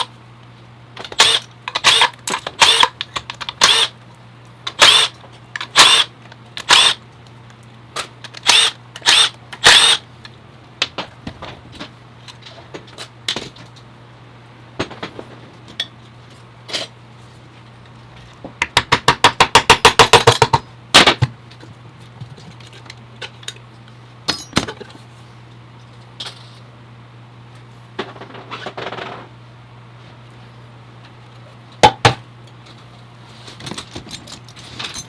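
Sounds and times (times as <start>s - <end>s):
metal tools and parts clinking: 33.6s - 35.0s.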